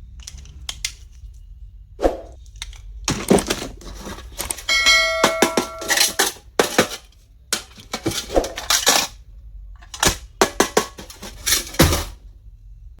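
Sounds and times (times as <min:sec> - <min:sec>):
plastic stationery clicking: 0:00.1 - 0:01.4.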